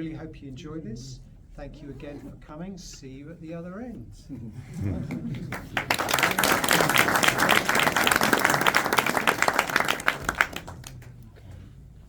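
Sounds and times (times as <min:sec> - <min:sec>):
audience applauding: 0:05.1 - 0:11.4.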